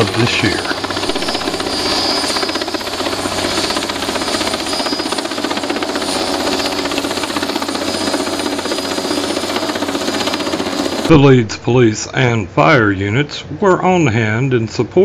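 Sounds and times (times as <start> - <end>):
helicopter rotor drone: 0.0 - 11.7.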